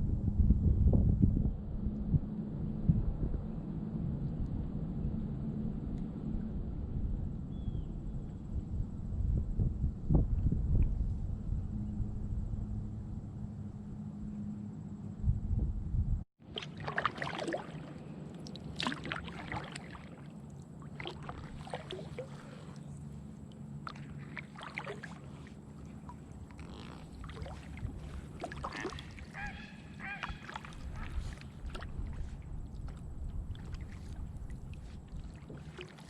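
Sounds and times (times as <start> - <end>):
paddle splashing in water: 16.4 - 36.0.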